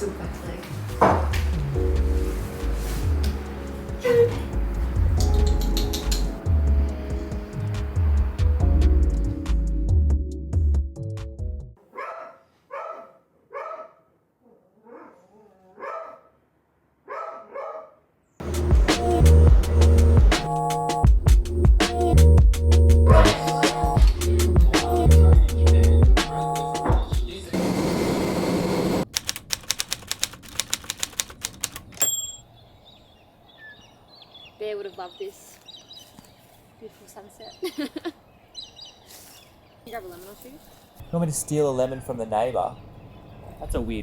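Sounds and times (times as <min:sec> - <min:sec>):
dog barking: 0:11.8 - 0:16.4, 0:17.0 - 0:18.1
rapid sharp clicking: 0:29.0 - 0:32.0
bell-like ding: 0:32.0 - 0:32.4.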